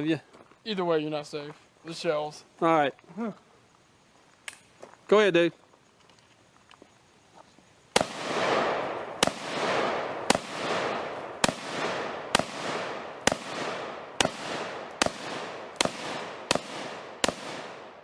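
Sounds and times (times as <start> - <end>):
rifle shots with echo: 8.0 - 18.0.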